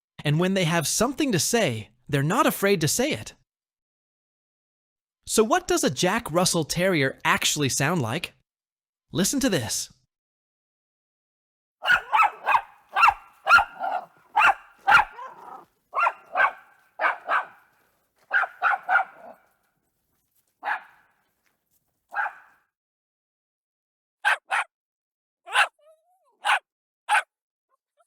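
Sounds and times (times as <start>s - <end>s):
dog barking: 11.8s - 19.5s, 20.6s - 21.1s, 22.1s - 22.6s, 24.2s - 24.7s, 25.5s - 25.8s, 26.4s - 27.4s.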